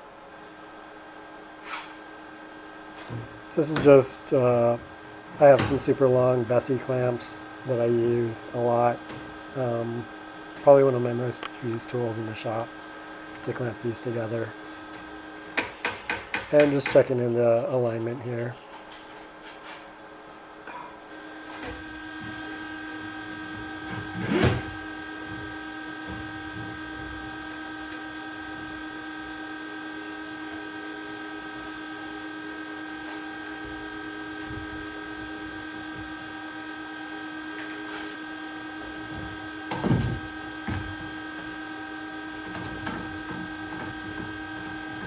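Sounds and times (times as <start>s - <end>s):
steady machine hum: 0.0s - 45.0s
loud knocks of wood or metal: 15.6s - 16.7s.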